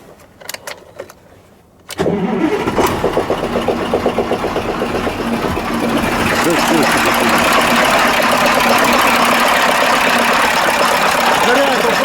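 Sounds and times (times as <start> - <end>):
diesel engine starting and running: 1.9 - 12.0.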